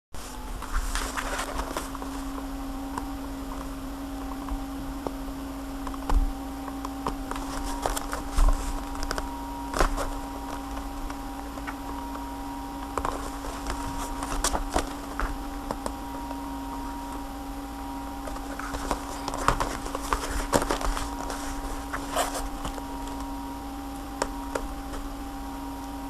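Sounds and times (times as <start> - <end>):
packaging being handled and opened: 0.2 - 2.4, 7.0 - 12.2, 12.8 - 16.0, 18.2 - 23.3
steady low hum: 0.2 - 26.0.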